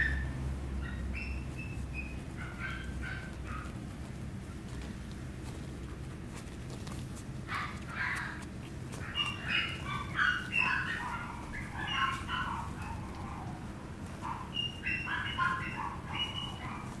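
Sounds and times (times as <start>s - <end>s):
puppy squeaking and whimpering: 0.0s - 3.8s, 7.5s - 17.0s
steady low hum: 0.0s - 17.0s.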